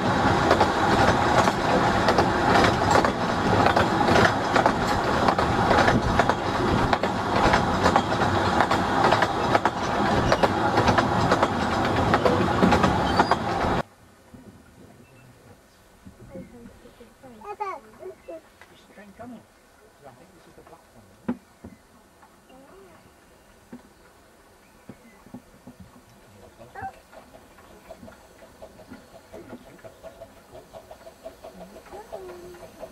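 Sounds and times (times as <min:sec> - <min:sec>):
train clattering over track: 0:00.0 - 0:14.7, 0:23.6 - 0:32.9.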